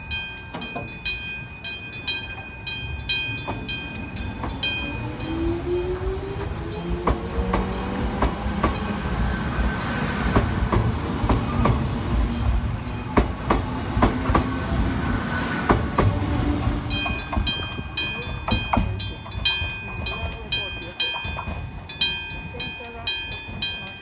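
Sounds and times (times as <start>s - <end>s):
crossing gong bell ringing: 0.0s - 9.1s, 16.8s - 24.0s
low train rumble: 0.0s - 24.0s
train wheels clacking on rails: 0.1s - 24.0s.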